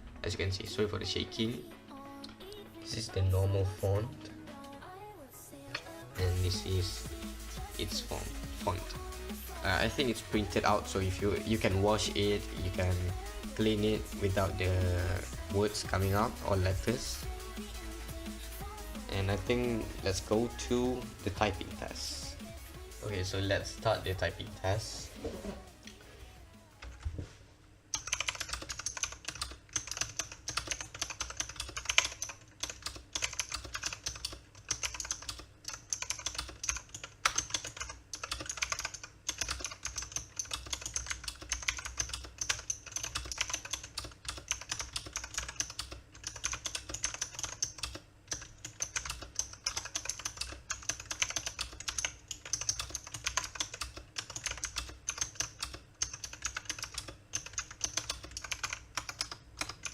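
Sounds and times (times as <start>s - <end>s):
mechanical keyboard typing: 27.9s - 59.9s.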